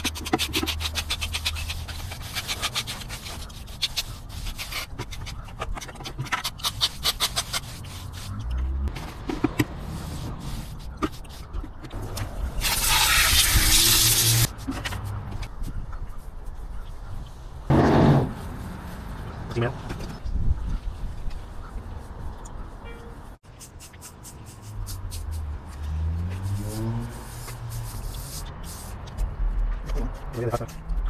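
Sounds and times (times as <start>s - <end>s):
hand tool scraping stucco: 0.0s - 14.6s.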